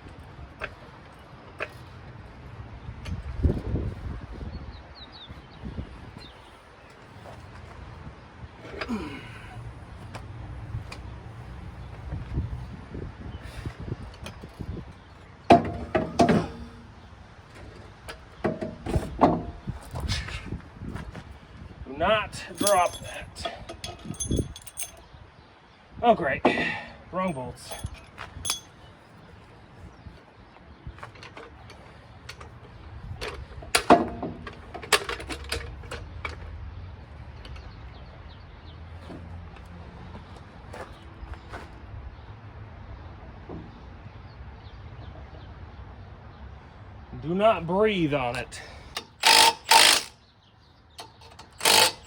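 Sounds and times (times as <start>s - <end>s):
metal parts clanking: 15.5s - 16.9s, 22.3s - 25.1s, 26.4s - 28.8s, 31.0s - 36.5s, 48.6s - 50.1s, 51.0s - 52.0s
metal counterweight clanking: 22.4s - 25.0s.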